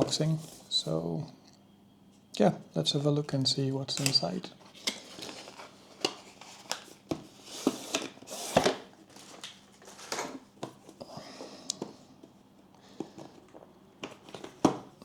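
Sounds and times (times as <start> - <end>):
packaging crinkling and rustling: 3.9 - 11.0, 13.2 - 15.0.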